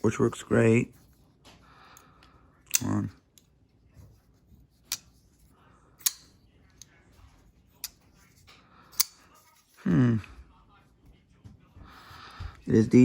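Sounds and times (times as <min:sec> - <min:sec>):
folding knife blade clicking: 0:06.0 - 0:06.3.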